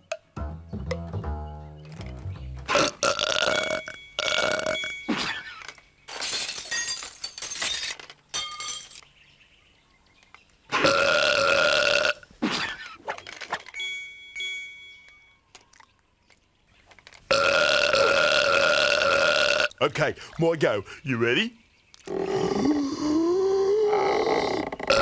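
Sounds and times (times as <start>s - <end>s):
cartoon burps: 2.7s - 5.6s, 10.7s - 12.9s, 17.3s - 19.8s, 23.9s - 25.0s.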